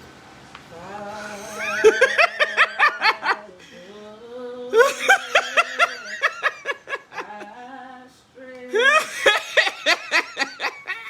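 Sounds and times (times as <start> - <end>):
person laughing hard: 1.2 - 3.5, 4.8 - 7.6, 8.8 - 11.0.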